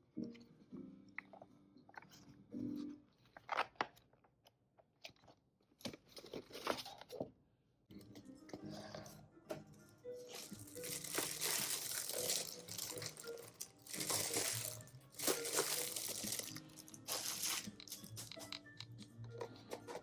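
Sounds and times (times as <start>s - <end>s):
soft background music: 0.0s - 3.8s, 7.8s - 20.0s
packaging crinkling: 10.3s - 18.7s.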